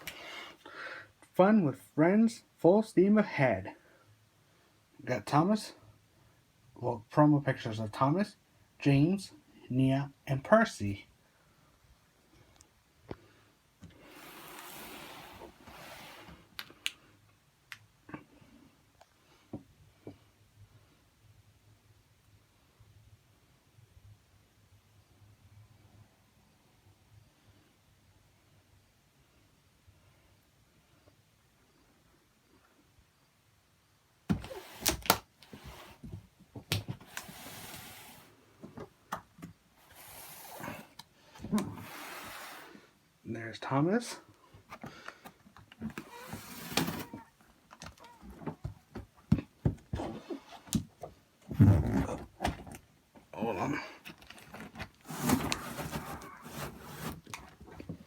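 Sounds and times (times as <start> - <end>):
cardboard rubbing and sliding: 14.0 - 16.5, 34.3 - 36.2, 36.9 - 38.4, 39.8 - 42.8, 46.0 - 47.3, 54.4 - 57.6
cardboard box scraping and rustling: 39.8 - 41.0, 46.0 - 47.2, 54.4 - 57.6.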